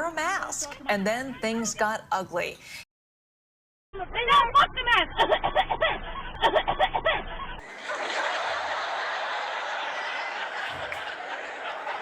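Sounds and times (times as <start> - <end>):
crowd laughing: 5.0 - 12.0.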